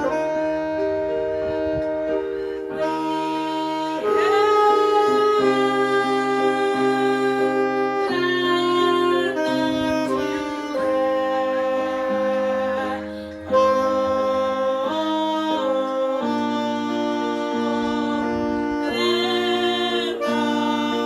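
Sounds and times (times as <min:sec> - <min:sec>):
instrumental worship music: 0:00.0 - 0:21.0.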